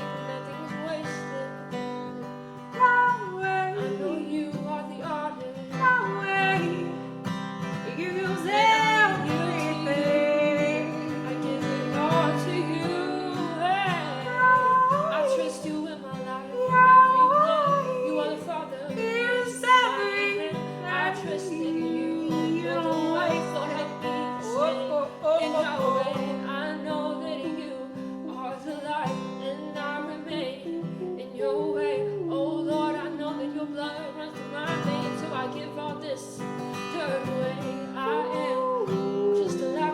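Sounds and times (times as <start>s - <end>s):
acoustic guitar chords: 0.0s - 39.9s
person singing: 2.7s - 39.9s.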